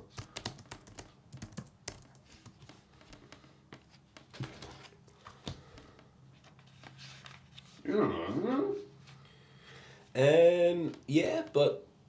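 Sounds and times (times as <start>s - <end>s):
faint room hum: 0.0s - 12.0s
typing on computer keyboard: 0.1s - 2.6s.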